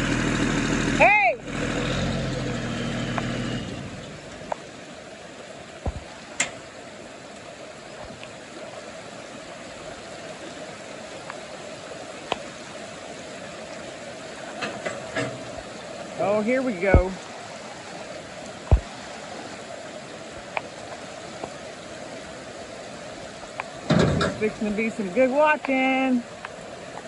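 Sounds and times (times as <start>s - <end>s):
truck engine idling: 0.0s - 4.7s
creek water rushing: 0.0s - 27.0s.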